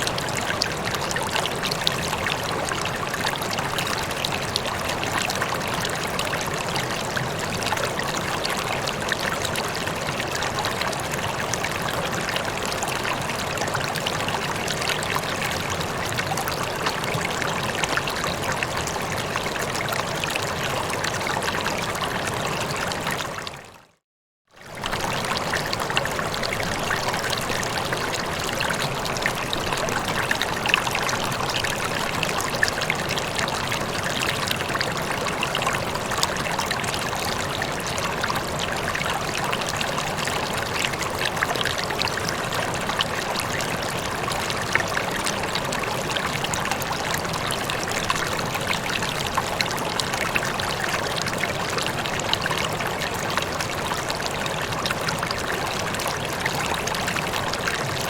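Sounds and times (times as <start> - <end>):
water trickling: 24.6 - 58.0.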